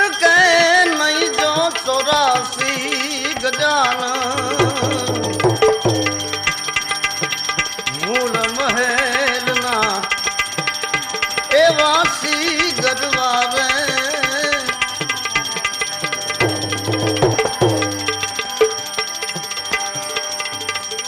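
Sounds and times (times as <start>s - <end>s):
tabla beating: 0.0s - 21.0s
wavering melodic line: 3.0s - 7.0s, 14.3s - 21.0s.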